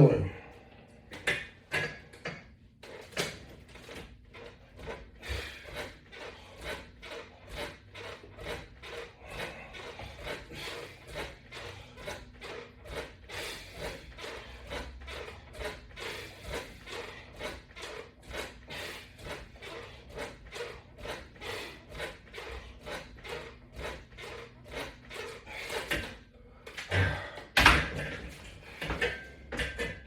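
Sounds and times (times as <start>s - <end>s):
body and straps rubbing: 2.9s - 26.1s.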